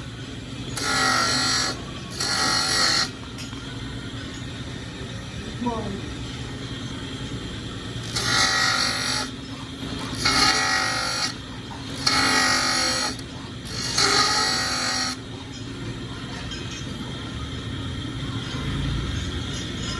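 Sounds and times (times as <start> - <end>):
metal grinding on grinding wheel: 0.0 - 4.6, 7.8 - 15.7
grinder motor hum: 0.0 - 19.9.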